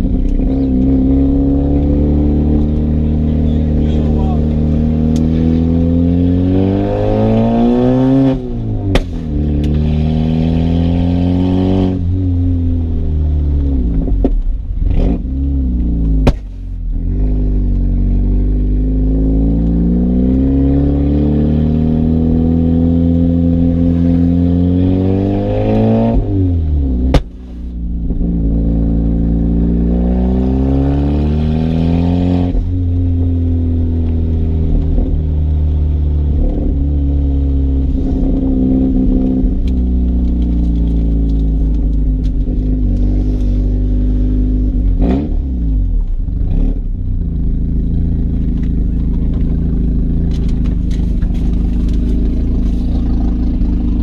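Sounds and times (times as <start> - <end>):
car engine accelerating through gears: 0.0 - 54.0.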